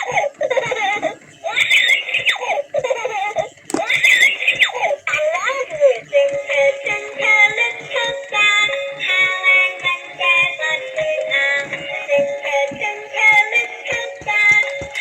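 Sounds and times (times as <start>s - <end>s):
soft knocking beat: 3.7s - 15.0s.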